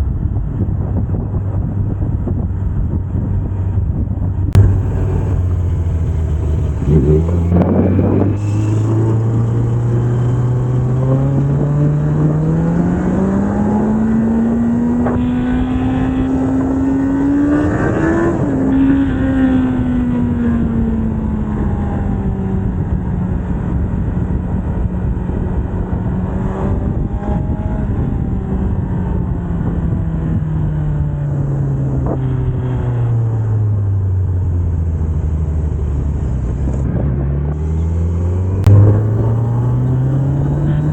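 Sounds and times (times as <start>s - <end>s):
wind and road noise: 0.0s - 40.9s
motorcycle engine revving: 4.5s - 40.9s.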